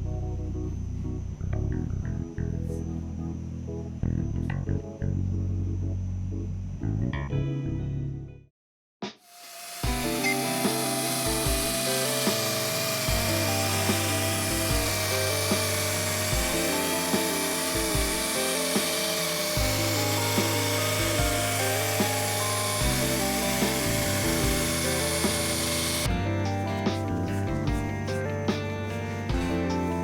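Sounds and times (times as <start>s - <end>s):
music with bass and beat: 9.8s - 30.0s.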